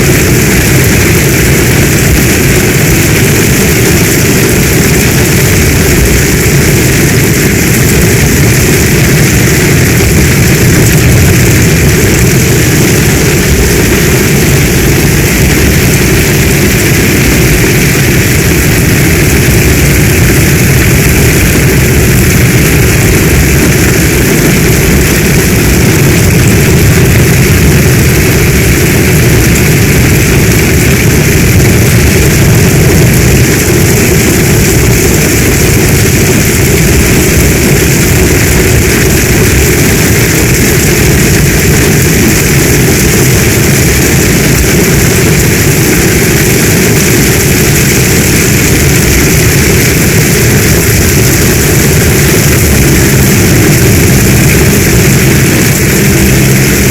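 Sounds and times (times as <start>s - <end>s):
deep low rumble: 0.0s - 56.9s
heavy rain rushing: 0.0s - 56.9s.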